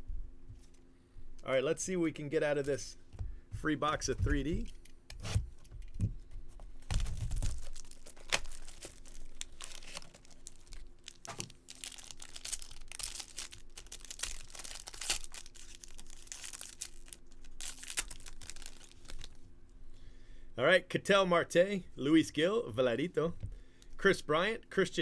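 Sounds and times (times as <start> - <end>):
packaging tearing and crinkling: 6.8 - 19.4
sharp crackles: 6.8 - 19.4.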